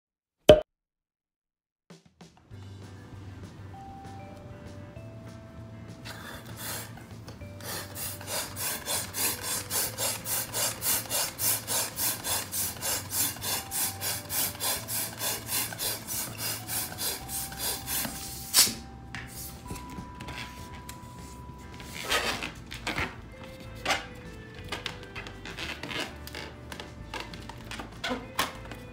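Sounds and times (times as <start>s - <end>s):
faint music: 2.4s - 28.9s
rasping rubbing strokes: 7.6s - 19.6s
balloon popping: 8.8s - 18.9s.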